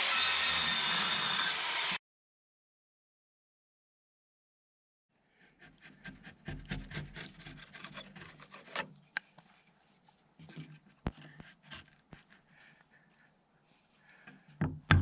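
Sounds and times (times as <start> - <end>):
scraping and rubbing on wood: 5.6 - 12.4.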